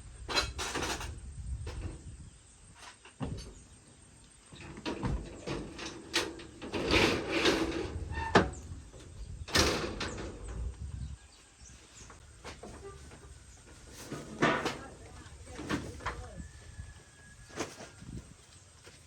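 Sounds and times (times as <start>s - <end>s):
knocks and clanks: 0.3s - 2.0s, 4.6s - 10.8s, 12.4s - 16.3s.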